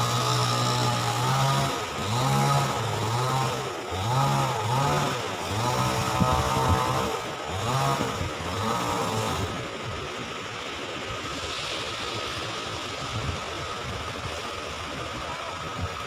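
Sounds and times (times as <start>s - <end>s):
small motorcycle engine revving: 0.0s - 10.4s.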